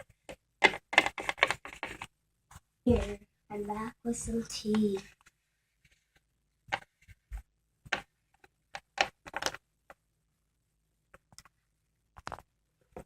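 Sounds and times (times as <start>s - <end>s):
plastic toys clicking on hard surface: 0.6s - 2.1s.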